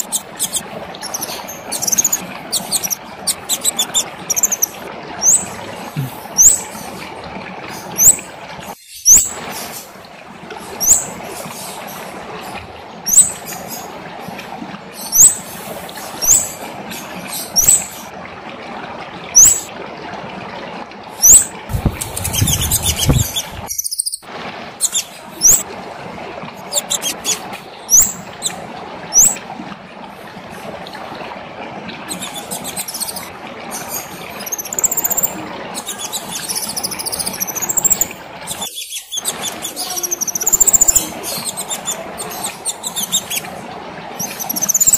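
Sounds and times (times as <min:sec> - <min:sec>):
songbird chirping: 0:00.0 - 0:05.4
noisy rustle: 0:21.7 - 0:23.7.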